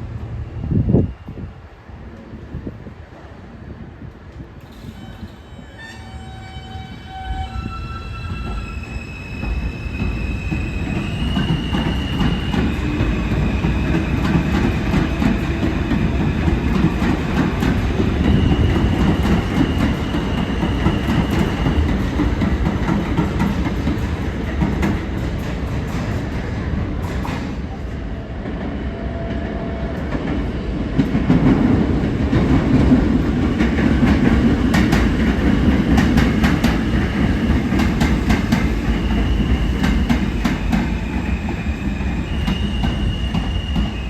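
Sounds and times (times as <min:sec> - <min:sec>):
subway train motors whining: 0:00.0 - 0:44.0
train wheels clattering over rail joints: 0:10.5 - 0:27.8.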